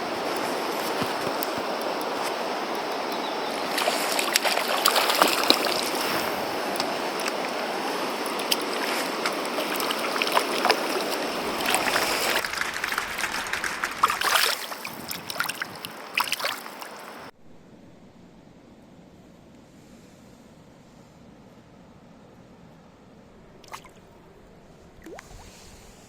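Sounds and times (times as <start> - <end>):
stream rushing over rocks: 0.0 - 17.3.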